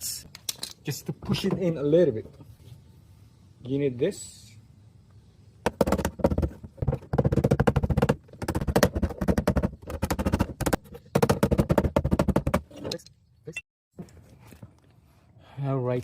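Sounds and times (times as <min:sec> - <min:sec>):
rapid metal hammering on rivets: 0:05.6 - 0:12.7.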